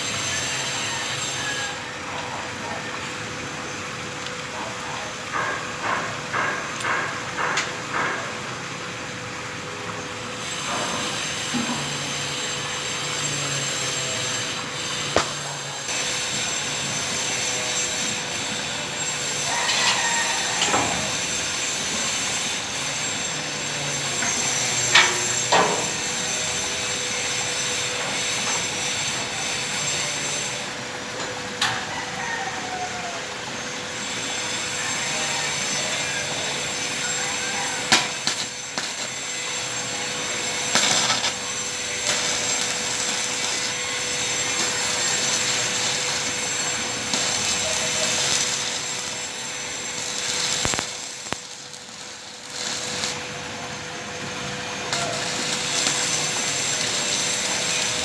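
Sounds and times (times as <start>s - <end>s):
welding hiss: 0.0s - 58.0s
short squeals: 17.2s - 21.7s.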